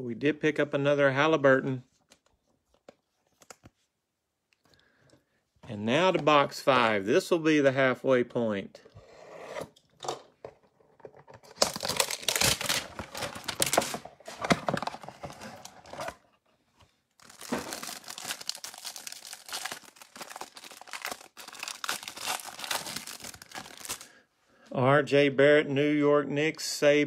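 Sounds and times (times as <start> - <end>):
card packaging tearing and crinkling: 11.4 - 16.2, 17.2 - 24.2.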